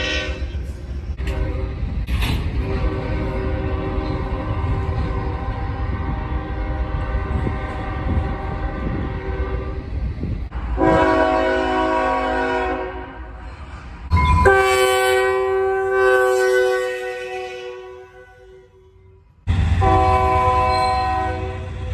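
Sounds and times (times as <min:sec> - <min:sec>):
train rumbling: 0:00.0 - 0:21.9
multi-chime train horn: 0:10.8 - 0:13.1, 0:14.2 - 0:19.2, 0:19.8 - 0:21.7.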